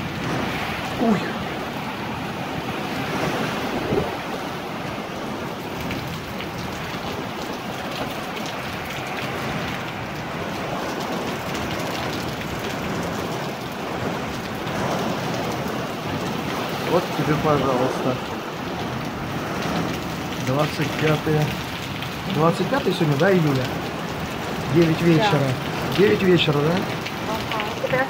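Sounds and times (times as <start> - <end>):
strong wind: 0.0 - 22.4
heavy rain: 0.0 - 28.0.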